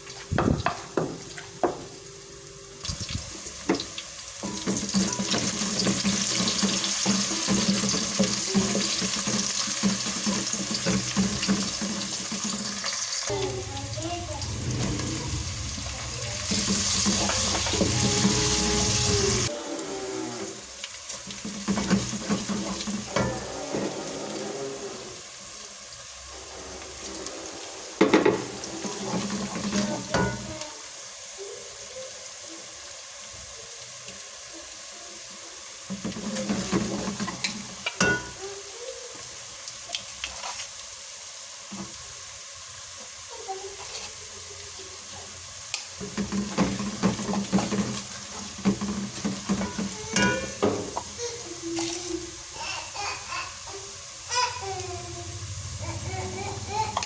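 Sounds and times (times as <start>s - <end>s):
food sizzling in a pan: 0.0s - 57.0s
spoon scraping and knocking pan: 3.7s - 13.0s, 15.8s - 19.4s, 21.3s - 24.0s, 28.0s - 30.6s, 35.9s - 38.4s, 46.0s - 51.2s.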